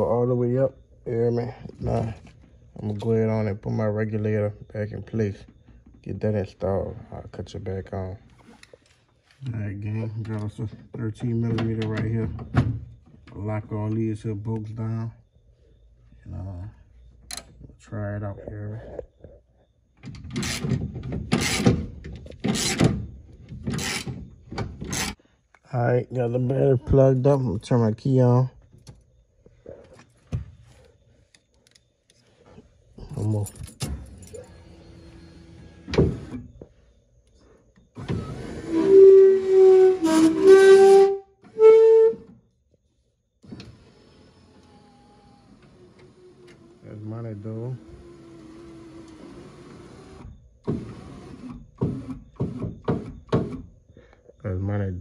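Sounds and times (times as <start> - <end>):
power window motor squeaking: 34.3 - 36.5.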